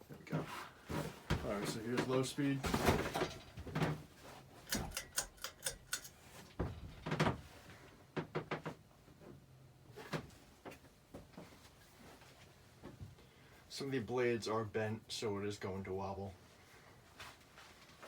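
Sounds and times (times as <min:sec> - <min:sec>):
clicks and light knocks: 0:04.7 - 0:07.4.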